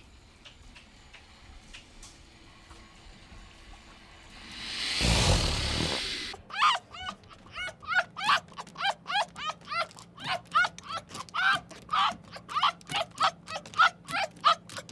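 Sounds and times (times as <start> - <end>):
loud burst of noise: 4.0 - 6.4
puppy yipping: 6.5 - 14.9.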